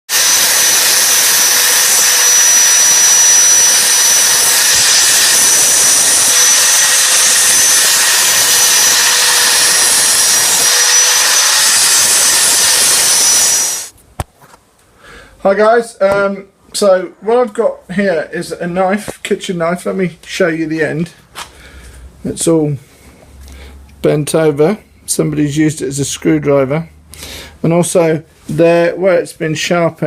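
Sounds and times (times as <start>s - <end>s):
angle grinder running: 0.1s - 14.0s.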